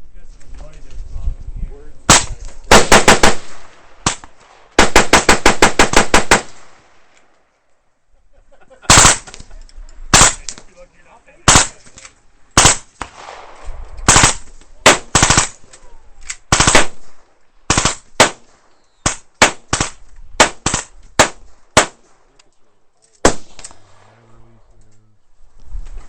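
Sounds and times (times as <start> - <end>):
suppressed single gunshots: 2.1 - 7.1, 8.9 - 9.3, 12.6 - 15.6, 16.4 - 22.2, 23.2 - 24.2.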